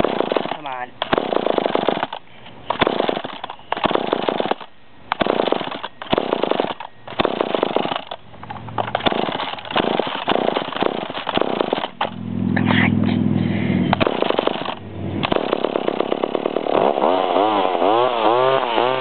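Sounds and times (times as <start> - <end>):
chainsaw cranking and sputtering: 0.0 - 4.6, 8.8 - 12.2, 14.0 - 19.0.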